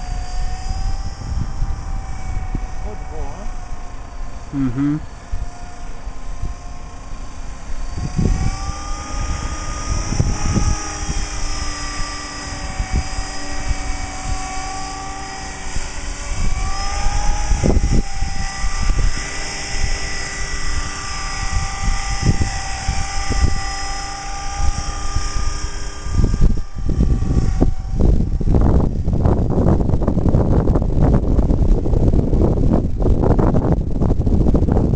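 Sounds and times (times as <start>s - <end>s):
rc helicopter rotor whine: 0.0s - 34.9s
wind buffeting microphone: 0.0s - 34.9s.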